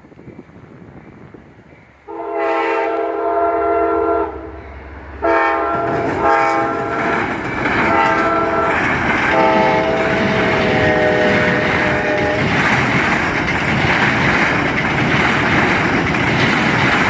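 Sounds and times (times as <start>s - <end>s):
passing train rumble: 0.0s - 17.0s
locomotive air horn: 2.1s - 12.5s.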